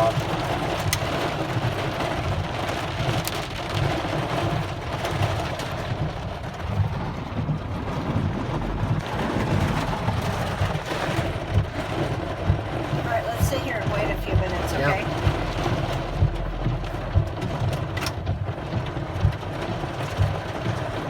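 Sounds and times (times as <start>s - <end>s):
heavy rain rushing: 0.0s - 21.0s
low rumble: 4.6s - 21.0s.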